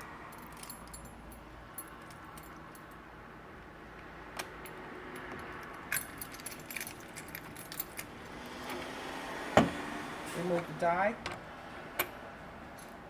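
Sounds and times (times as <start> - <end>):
small metal clinks: 0.0 - 3.1, 4.4 - 8.8.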